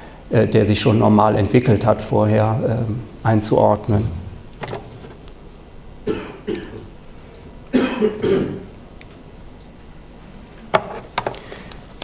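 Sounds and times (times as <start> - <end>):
person coughing: 6.0 - 6.9, 7.7 - 8.7.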